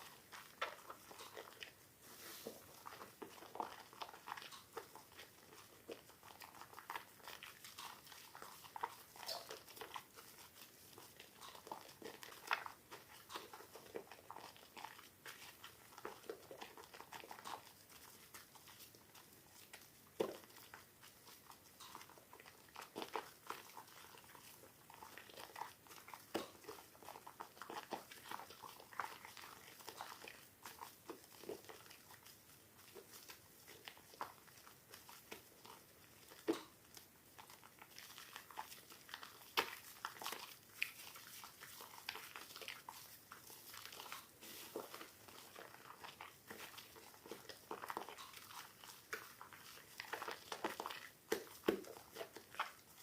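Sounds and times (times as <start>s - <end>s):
wet soap squished by hand: 0.0s - 53.0s.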